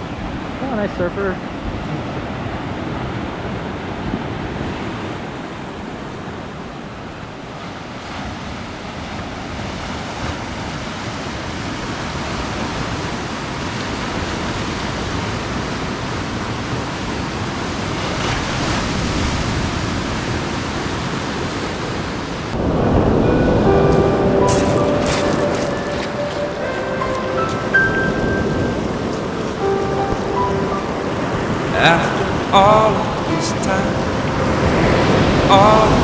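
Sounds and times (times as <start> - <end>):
ocean waves washing: 0.0 - 36.0
music: 22.7 - 36.0.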